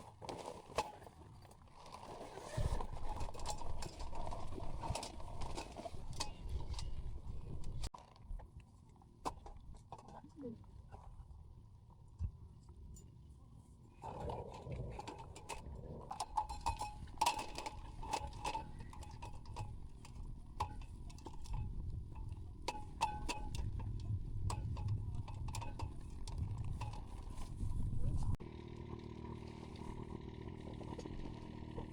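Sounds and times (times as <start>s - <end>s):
steady low rumble: 23.5s - 28.4s.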